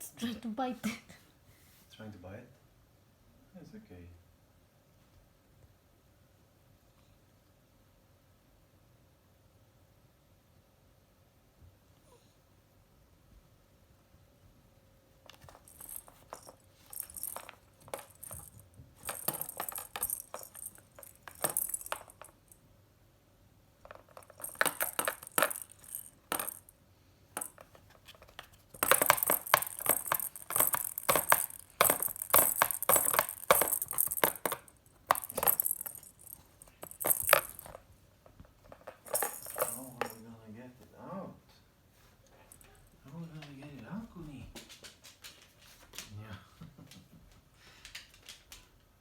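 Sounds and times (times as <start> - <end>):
metal cat toy jingling: 15.3 - 22.6, 23.9 - 26.7, 27.4 - 37.8, 38.8 - 40.2.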